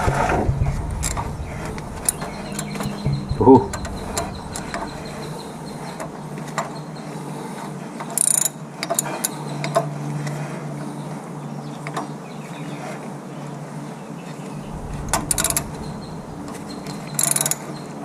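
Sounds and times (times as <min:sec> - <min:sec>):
metal clatter: 0:00.0 - 0:06.8, 0:14.6 - 0:18.0
steady low hum: 0:00.0 - 0:07.6, 0:14.5 - 0:18.0.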